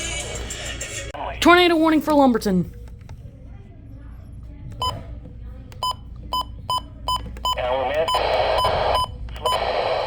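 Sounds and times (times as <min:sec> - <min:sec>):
electronic alert beeps: 0:04.8 - 0:05.0
harsh static data noise: 0:07.5 - 0:10.0.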